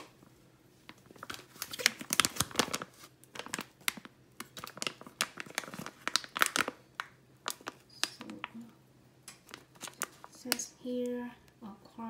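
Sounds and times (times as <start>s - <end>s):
plastic bag crinkling: 0.8s - 8.7s, 9.3s - 10.6s.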